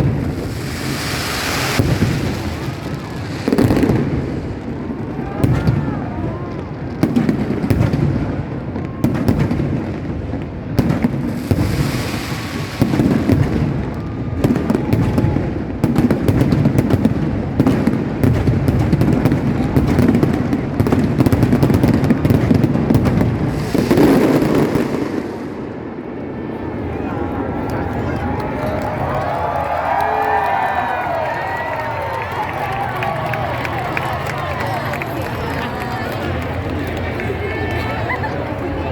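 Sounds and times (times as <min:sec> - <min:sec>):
fireworks boom: 0:00.0 - 0:26.0
fireworks cracking and popping: 0:00.0 - 0:26.3.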